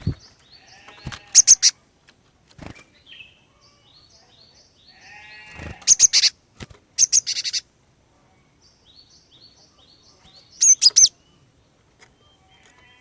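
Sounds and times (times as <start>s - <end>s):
bird sharp chirps: 2.8s - 6.4s, 7.0s - 7.6s, 8.6s - 11.4s.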